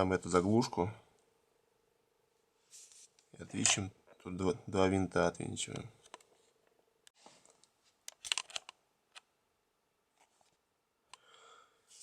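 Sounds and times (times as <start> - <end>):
plastic parts being handled: 7.2 - 9.3.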